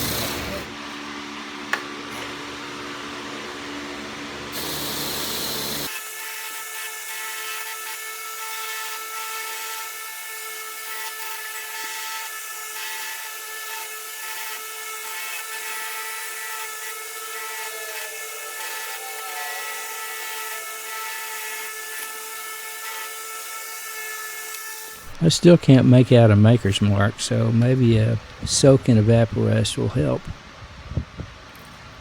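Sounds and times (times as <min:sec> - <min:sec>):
wire brush power tool whining: 0:00.0 - 0:00.7, 0:04.5 - 0:25.3.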